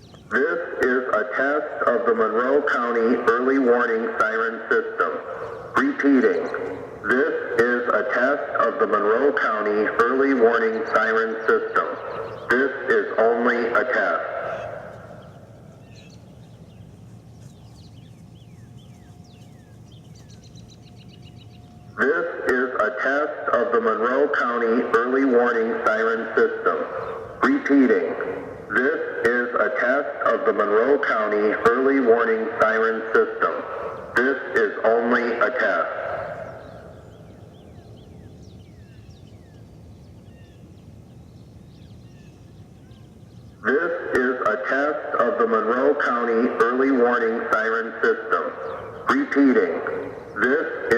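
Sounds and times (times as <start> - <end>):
small birds chirping: 0.0 - 0.4, 5.0 - 7.2, 10.5 - 22.1, 26.0 - 28.9, 36.2 - 43.8, 48.2 - 50.8
low background rumble: 0.0 - 50.9.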